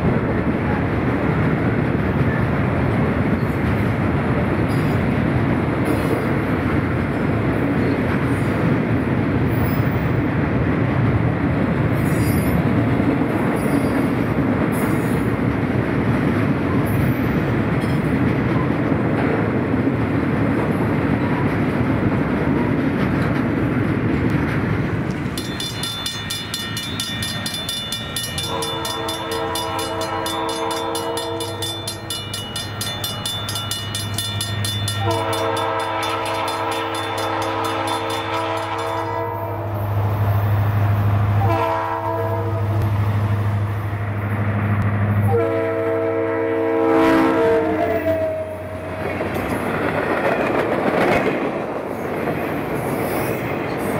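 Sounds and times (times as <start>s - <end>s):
rumble of passing train: 0.0s - 53.9s
locomotive engine: 23.4s - 41.6s
locomotive horn: 28.4s - 32.1s, 35.0s - 39.9s, 41.4s - 42.9s, 45.2s - 48.9s.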